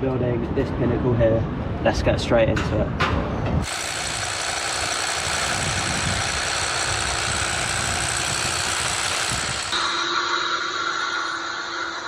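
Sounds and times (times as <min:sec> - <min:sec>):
machinery droning with hiss: 0:09.7 - 0:12.0.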